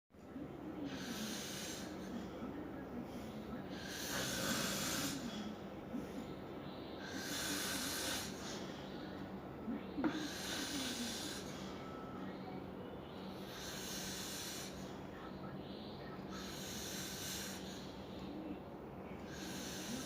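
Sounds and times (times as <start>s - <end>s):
person snoring: 0.8s - 2.2s, 3.7s - 5.5s, 7.0s - 8.6s, 10.0s - 11.7s, 13.3s - 14.8s, 16.3s - 17.9s, 19.3s - 20.0s.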